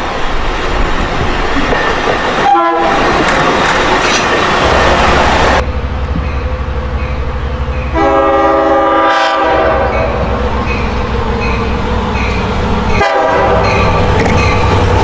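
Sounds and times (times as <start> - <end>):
locomotive horn blasts: 2.4 - 3.0, 7.9 - 10.4, 12.9 - 14.0
diesel engine low rumble: 5.2 - 8.2
crossing bell dinging: 9.8 - 15.0.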